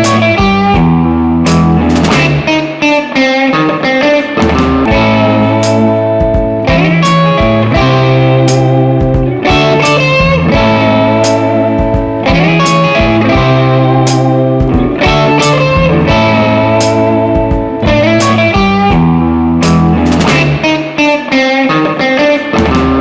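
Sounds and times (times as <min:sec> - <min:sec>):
sustained bass notes: 0:00.0 - 0:02.5, 0:04.4 - 0:20.8
bluesy electric guitar: 0:00.0 - 0:23.0
sharp percussive hits: 0:01.5 - 0:02.7, 0:19.6 - 0:20.8.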